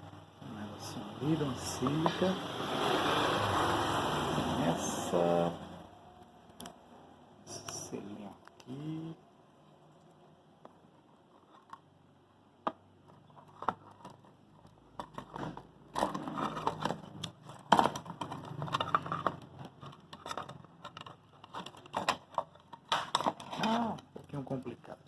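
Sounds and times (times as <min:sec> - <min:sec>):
packaging crinkling and scraping: 0:13.0 - 0:25.0
packaging clicks: 0:13.4 - 0:24.7.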